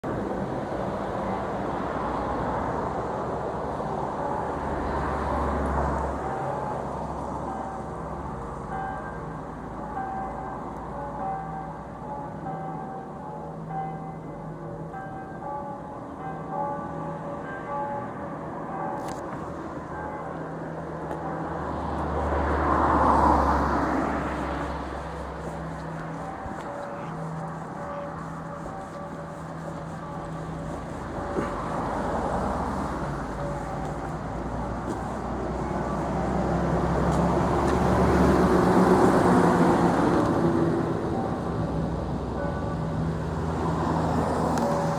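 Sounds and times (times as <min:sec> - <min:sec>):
faint church bells: 0:00.1 - 0:44.9
vehicle low rumble: 0:19.0 - 0:44.9
cars going past: 0:19.7 - 0:44.9.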